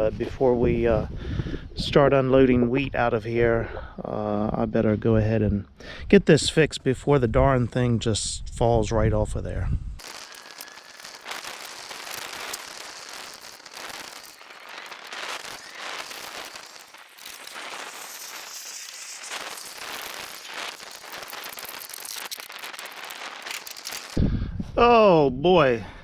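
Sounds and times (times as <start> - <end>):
tape peeling and ripping: 10.0 - 24.2.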